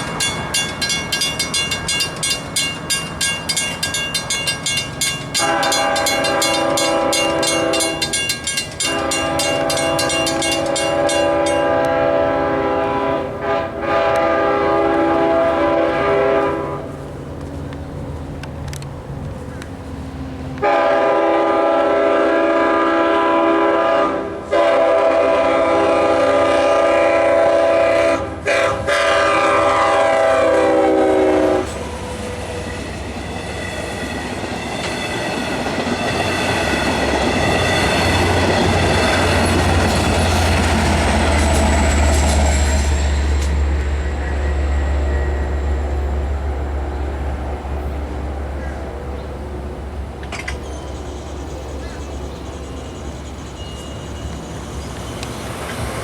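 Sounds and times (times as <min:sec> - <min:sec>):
train rushing by: 0:00.0 - 0:56.0
locomotive air horn: 0:05.3 - 0:17.0, 0:20.6 - 0:32.0.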